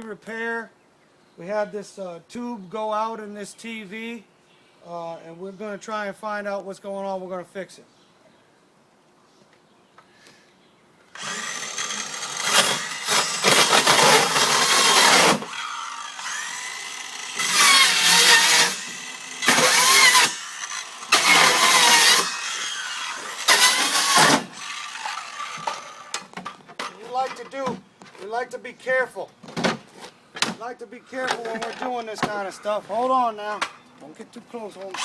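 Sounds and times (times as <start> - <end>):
power drill motor: 11.2 - 26.4.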